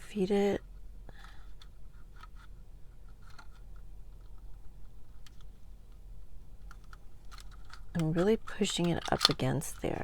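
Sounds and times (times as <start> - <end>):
label maker plastic clicks: 6.8 - 10.0.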